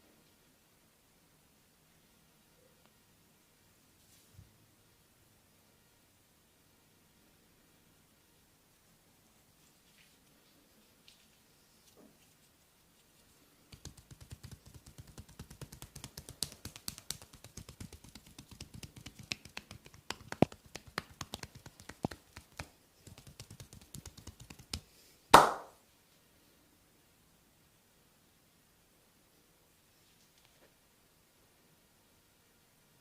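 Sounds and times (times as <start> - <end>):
rapid massage taps on back: 13.7 - 25.7
sharp smack: 25.4 - 25.8.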